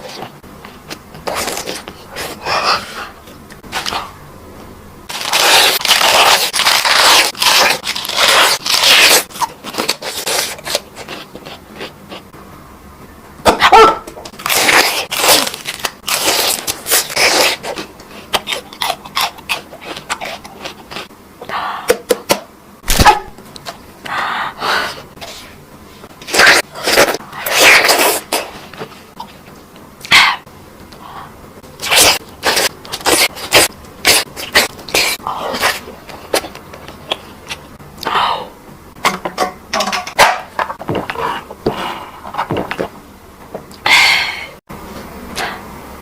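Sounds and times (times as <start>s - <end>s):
crunchy chewing: 14.4s - 21.1s.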